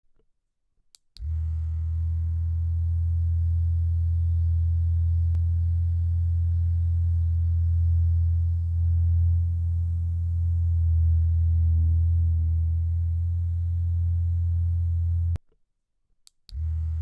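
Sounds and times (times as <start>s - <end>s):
vibrator buzzing: 1.2s - 15.4s.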